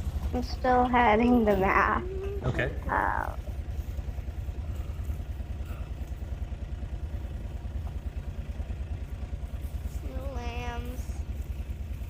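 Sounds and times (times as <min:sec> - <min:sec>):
vehicle engine running at low revs: 0:00.0 - 0:12.0.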